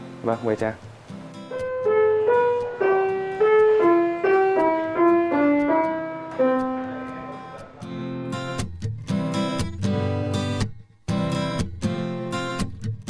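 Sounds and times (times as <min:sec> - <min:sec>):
slow piano melody: 0:01.0 - 0:08.6.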